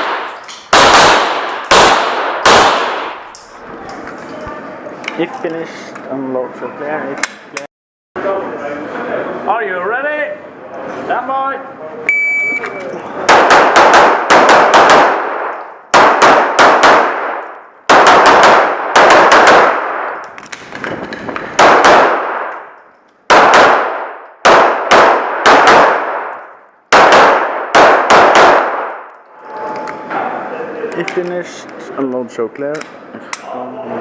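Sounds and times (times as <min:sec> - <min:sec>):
pistol shots echoing: 0:00.0 - 0:03.4, 0:13.3 - 0:20.3, 0:21.6 - 0:29.1.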